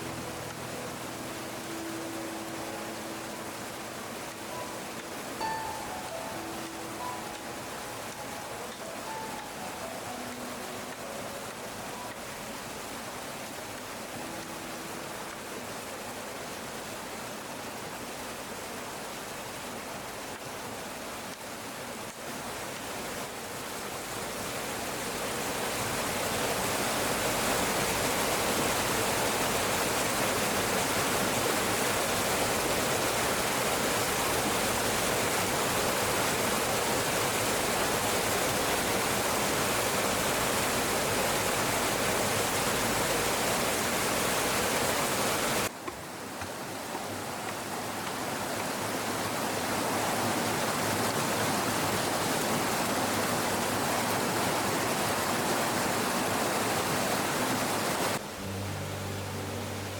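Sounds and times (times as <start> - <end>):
stream water rushing: 0.0 - 59.9.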